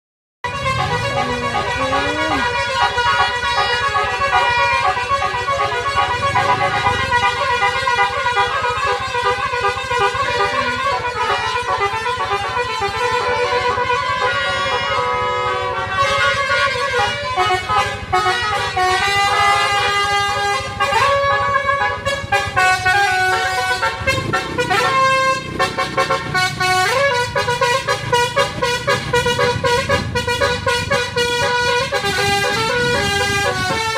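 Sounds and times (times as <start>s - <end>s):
multi-tone bus air horn melodies: 0.4s - 33.9s.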